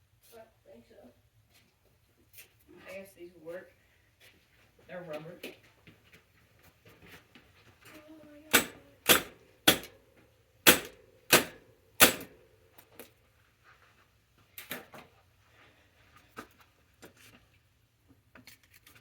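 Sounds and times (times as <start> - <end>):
sharp knocks: 8.5 - 9.9, 10.7 - 12.3.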